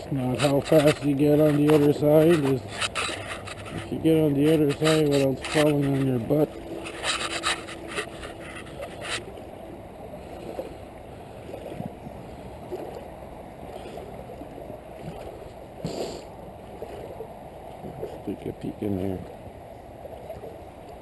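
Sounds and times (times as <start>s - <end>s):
waders rustling: 0.0s - 9.6s
creek water rushing: 0.0s - 21.0s.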